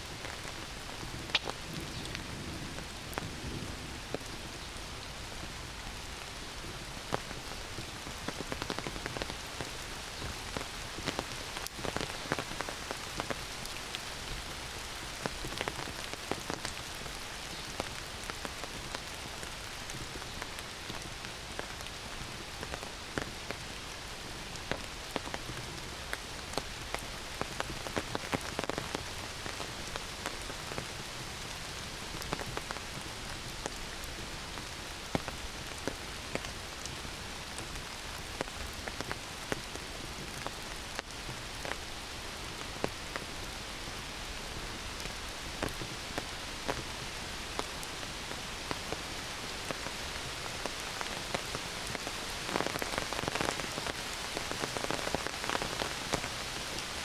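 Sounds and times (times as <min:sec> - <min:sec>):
heavy rain hissing: 0:00.0 - 0:57.0
raindrops pattering on leaves: 0:00.0 - 0:57.0.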